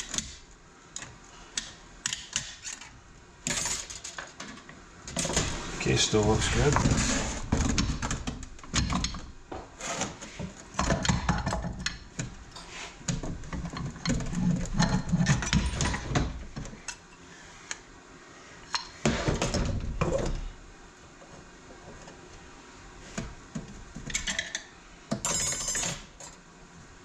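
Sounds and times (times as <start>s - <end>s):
metal parts clinking and scraping: 3.5s - 4.6s.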